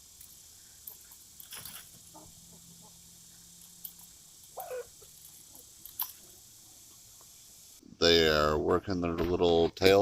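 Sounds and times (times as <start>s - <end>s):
chickens clucking: 0.9s - 7.0s.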